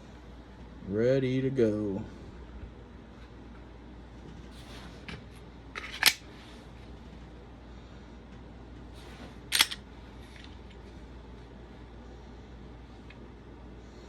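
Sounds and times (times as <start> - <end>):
pistol metallic clicks: 5.8 - 6.2, 9.5 - 9.8.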